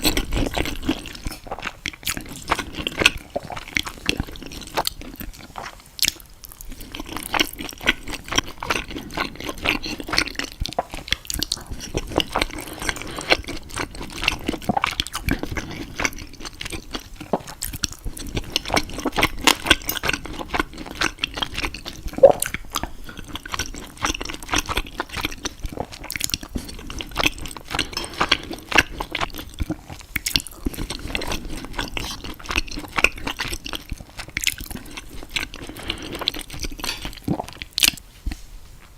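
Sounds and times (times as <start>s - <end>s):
person chewing food: 0.0s - 38.9s
pitched mouth sound: 22.2s - 22.5s.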